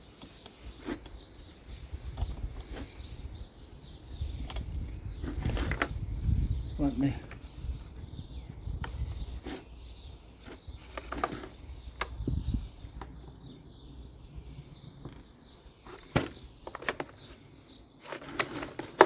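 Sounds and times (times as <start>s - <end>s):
clicks and knocks of hand tools: 4.4s - 5.9s, 15.9s - 17.4s, 18.0s - 19.0s.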